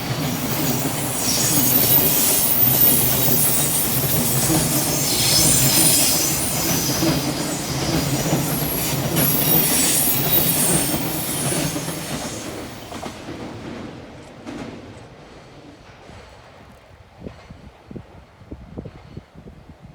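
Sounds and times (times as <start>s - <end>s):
train wheels squealing: 0.0s - 13.3s
clatter on rails: 0.0s - 17.7s
freight train rolling past: 0.0s - 19.2s.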